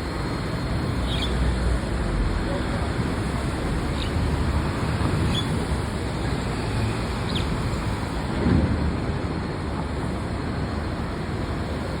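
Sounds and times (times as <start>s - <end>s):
small bird chirping: 1.0s - 1.4s.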